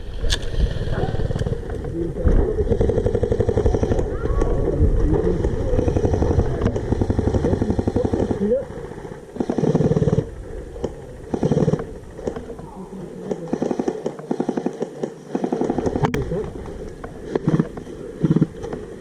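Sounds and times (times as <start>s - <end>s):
airsoft rifle firing: 2.6s - 4.6s, 5.4s - 8.4s, 9.3s - 18.8s.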